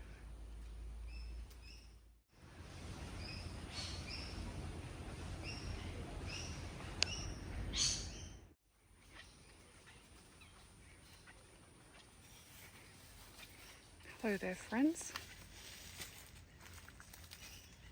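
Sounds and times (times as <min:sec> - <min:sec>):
low outdoor rumble: 0:00.0 - 0:08.6
birds chirping: 0:02.8 - 0:15.6.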